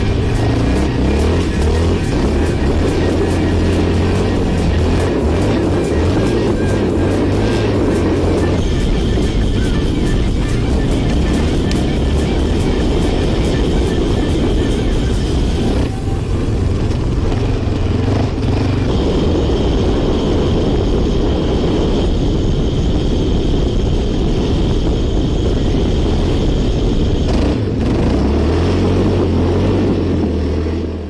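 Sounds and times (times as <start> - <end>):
off-road vehicle engine running: 0.0 - 31.0.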